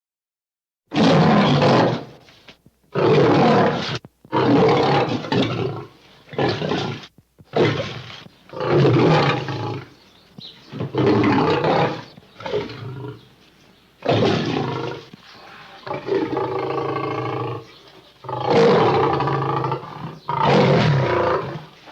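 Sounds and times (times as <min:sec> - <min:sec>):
animal roars and growls: 0:03.0 - 0:10.0, 0:10.7 - 0:13.2, 0:14.0 - 0:21.8.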